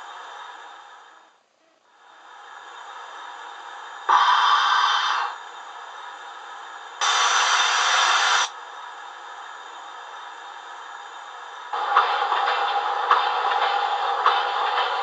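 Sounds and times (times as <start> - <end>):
steady steam hiss from speaker: 0.0 - 15.0
loud steam hiss bursts: 4.1 - 5.4, 7.0 - 8.5.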